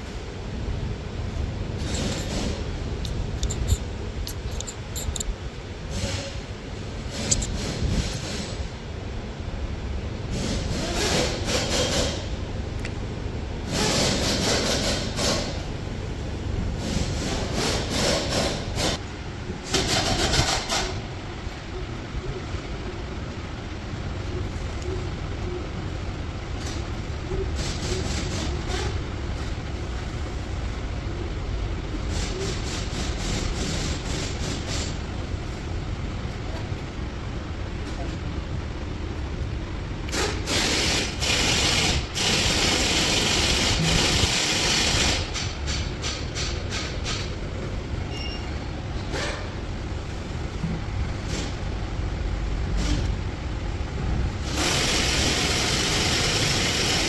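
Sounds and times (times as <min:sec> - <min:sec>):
steady low rumble: 0:00.0 - 0:10.4
low mechanical rumble: 0:00.0 - 0:57.0
metal scraping and rubbing: 0:01.8 - 0:05.3, 0:07.0 - 0:08.7.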